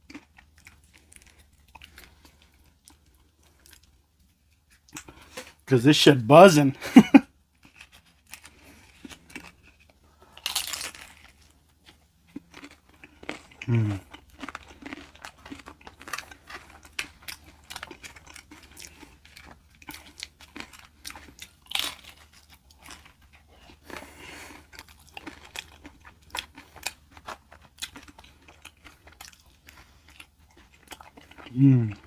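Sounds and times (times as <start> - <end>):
crunchy food chewing: 0.0 - 5.6, 7.5 - 32.0.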